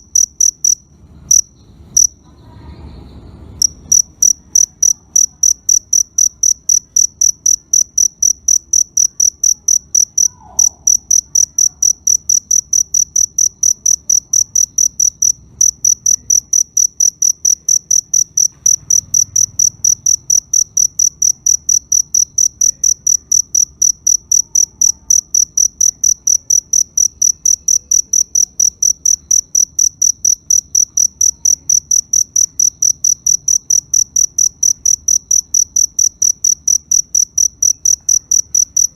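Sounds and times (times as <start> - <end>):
cricket chirping: 0.0 - 2.6, 3.6 - 38.9.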